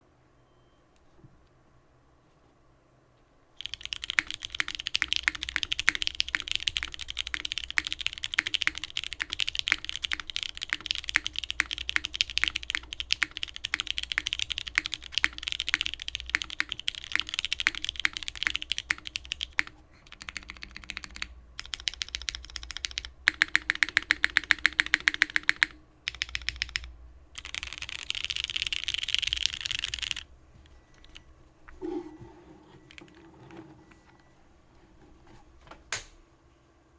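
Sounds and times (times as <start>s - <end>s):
typing on mechanical keyboard: 3.6s - 30.3s, 30.9s - 31.2s, 32.8s - 34.3s.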